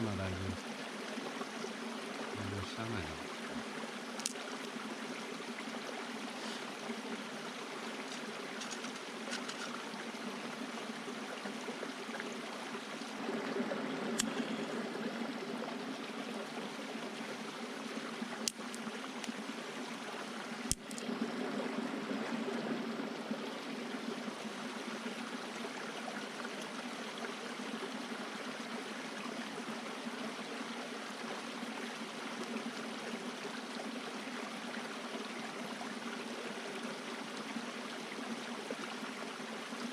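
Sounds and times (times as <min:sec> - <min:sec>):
stream flowing: 0:00.0 - 0:39.9
sharp clicks: 0:20.7 - 0:21.0.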